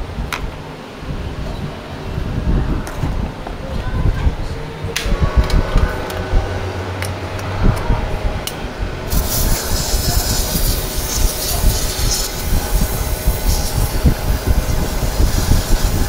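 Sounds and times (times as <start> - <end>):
aerosol spray hissing: 9.1 - 16.0.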